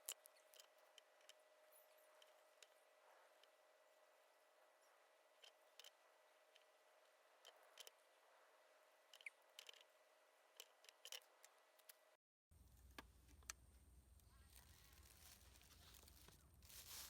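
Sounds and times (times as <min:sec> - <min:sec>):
faint clicks and handling noises: 0:00.0 - 0:08.2, 0:09.1 - 0:17.0.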